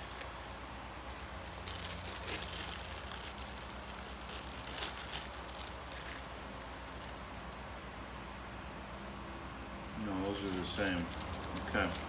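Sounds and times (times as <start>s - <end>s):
small parts clicking and rustling: 0.0s - 7.6s.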